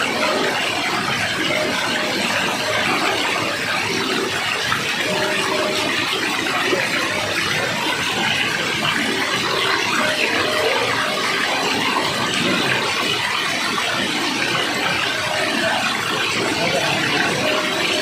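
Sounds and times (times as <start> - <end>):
waterfall rushing: 0.0 - 18.0.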